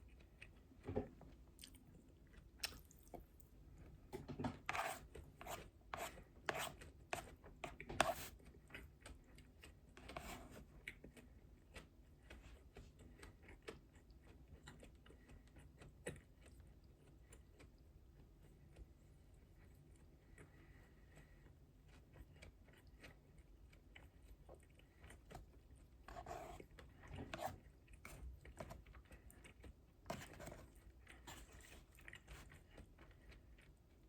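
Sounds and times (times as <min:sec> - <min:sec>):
mouth chewing crunchy food: 0:00.0 - 0:03.9, 0:10.6 - 0:34.0.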